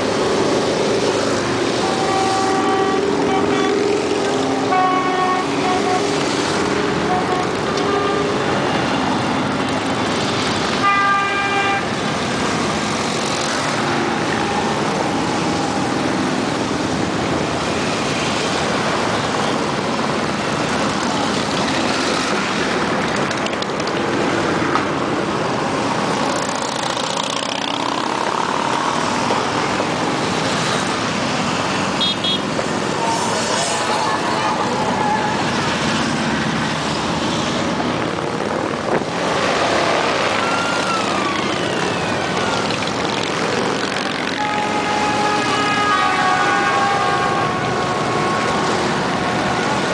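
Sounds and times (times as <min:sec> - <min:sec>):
motorcycle engines passing: 0:00.0 - 0:10.8, 0:11.7 - 0:49.9
horn sounding: 0:01.7 - 0:06.3, 0:10.8 - 0:12.0, 0:44.2 - 0:49.9.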